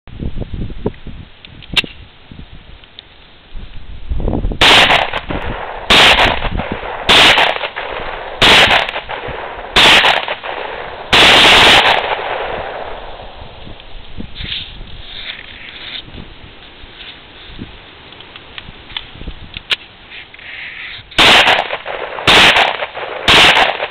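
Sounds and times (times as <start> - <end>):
pistol shots ringing out: 4.6 - 13.2, 21.2 - 23.9.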